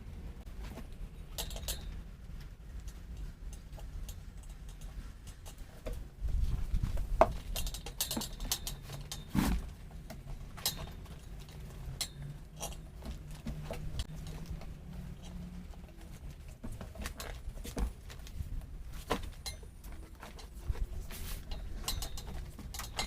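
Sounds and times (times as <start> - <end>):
metal tools clinking and knocking: 1.3 - 2.0, 7.3 - 9.3, 19.2 - 23.0.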